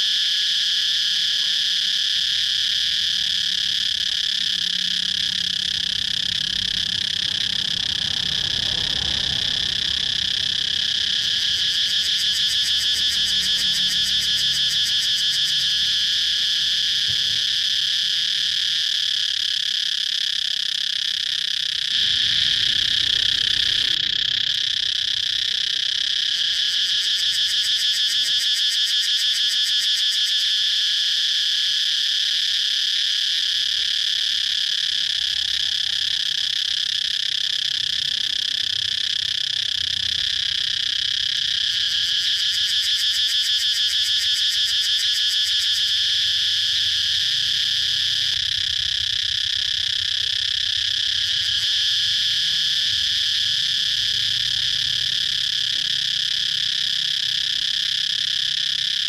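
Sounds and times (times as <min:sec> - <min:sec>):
cicadas singing: 0:00.0 - 0:59.0.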